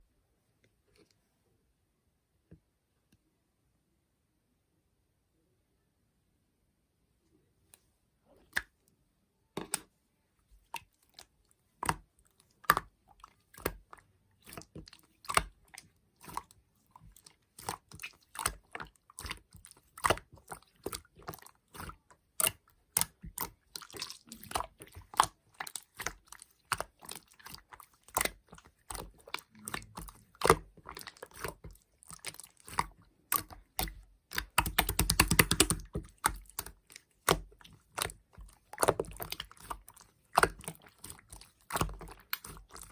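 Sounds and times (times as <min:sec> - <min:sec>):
material squeezed clicking and crackling: 0:13.6 - 0:42.9.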